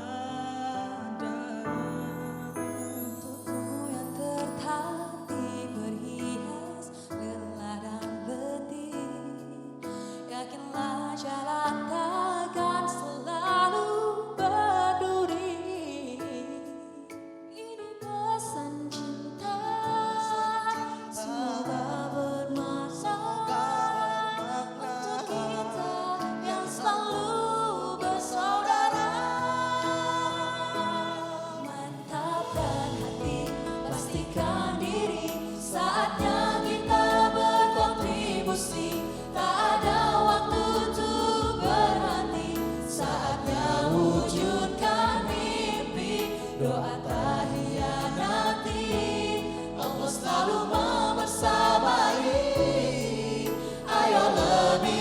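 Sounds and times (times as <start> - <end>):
vocal group singing harmonies: 0.0 - 16.8, 17.9 - 55.0
musical accompaniment: 27.9 - 55.0
deep bass: 32.6 - 35.6.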